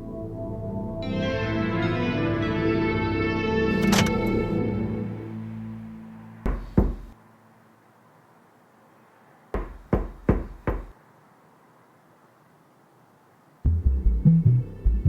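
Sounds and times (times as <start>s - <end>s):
knocking: 6.4s - 7.2s, 9.6s - 10.9s.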